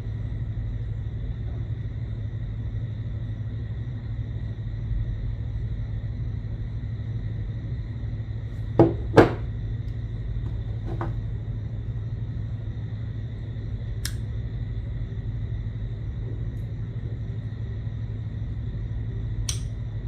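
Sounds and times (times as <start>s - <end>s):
steady low hum: 0.0s - 20.0s
pliers clicking on wire: 14.0s - 14.2s, 19.4s - 19.8s.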